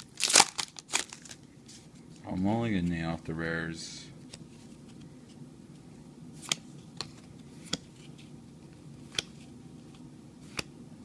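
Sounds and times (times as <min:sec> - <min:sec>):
low steady hum: 0:00.0 - 0:11.0
cards flicked with clicks: 0:09.1 - 0:09.4.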